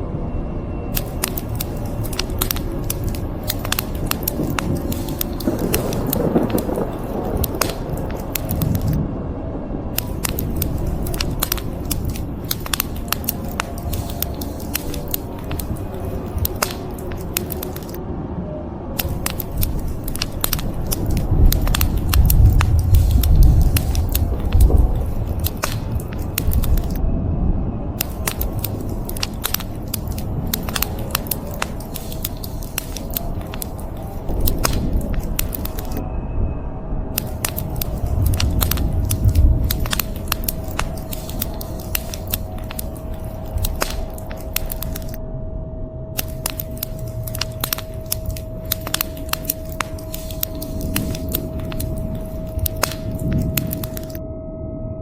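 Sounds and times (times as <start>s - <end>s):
rain hissing: 1.0s - 9.0s, 10.0s - 18.0s, 19.0s - 27.0s, 28.0s - 36.0s, 37.2s - 45.2s, 46.2s - 54.2s
wood fire crackling: 1.0s - 9.0s, 10.0s - 18.0s, 19.0s - 27.0s, 28.0s - 36.0s, 37.2s - 45.2s, 46.2s - 54.2s
low thunder rumbling: 5.4s - 8.0s.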